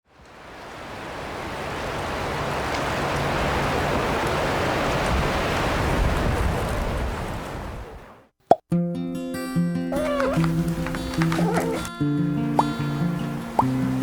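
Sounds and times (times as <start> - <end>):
wind buffeting microphone: 2.9 - 8.0.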